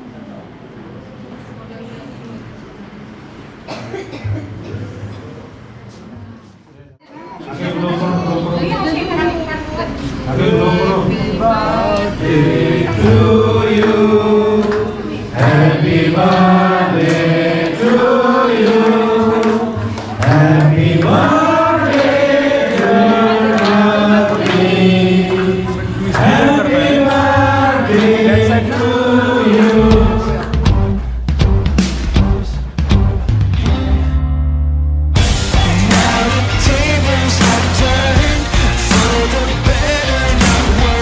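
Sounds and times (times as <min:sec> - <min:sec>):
group of voices chanting: 0:10.1 - 0:31.6, 0:35.2 - 0:41.0.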